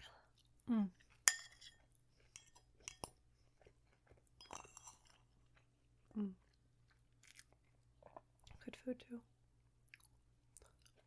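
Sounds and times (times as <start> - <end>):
person chewing crunchy food: 0.4 - 8.4, 9.9 - 11.0.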